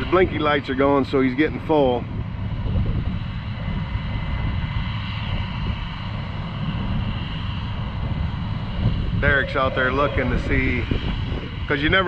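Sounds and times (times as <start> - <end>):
low engine rumble: 0.0 - 12.0
faint high hum: 9.0 - 11.5.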